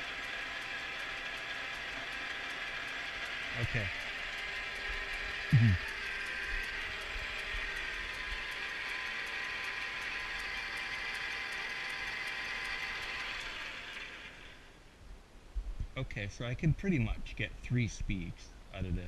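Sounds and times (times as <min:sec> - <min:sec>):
lathe whirring: 0:00.0 - 0:14.8.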